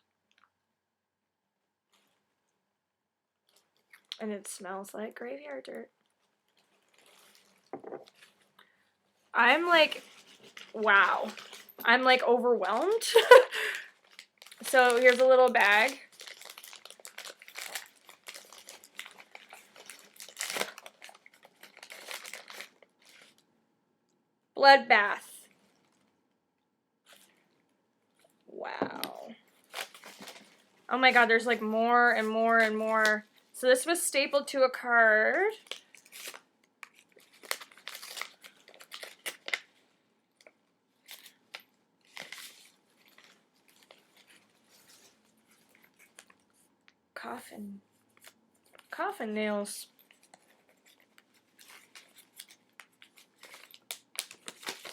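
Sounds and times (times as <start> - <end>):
packaging bag crinkling: 6.5 - 8.6, 9.4 - 23.4, 29.5 - 33.6, 35.6 - 39.8, 40.4 - 46.5, 49.9 - 54.9.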